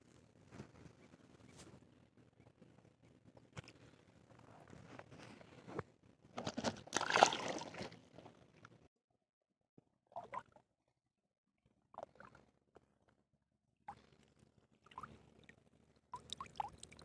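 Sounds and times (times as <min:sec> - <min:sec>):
water splashing and sloshing: 0:06.4 - 0:08.4.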